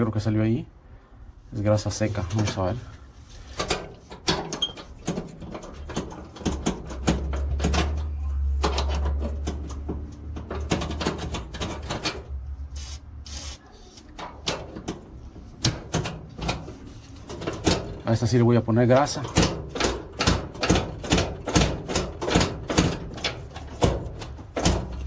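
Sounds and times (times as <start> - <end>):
hand scraping and rubbing grease: 1.8 - 17.7
clicks and knocks: 3.5 - 12.4
low hum: 7.3 - 13.5.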